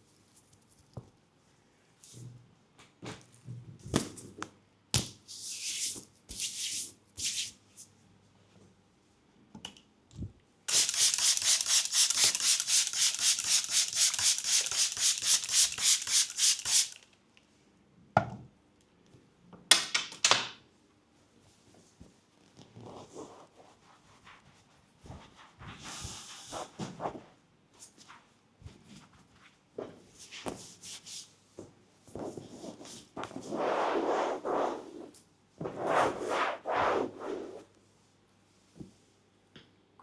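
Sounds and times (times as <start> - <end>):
hands rubbing skin: 10.7 - 17.0.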